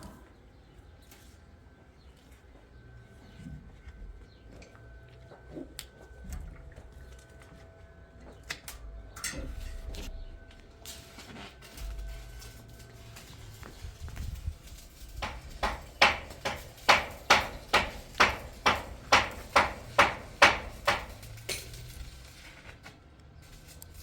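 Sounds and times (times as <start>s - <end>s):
hammer striking metal: 15.2s - 21.9s.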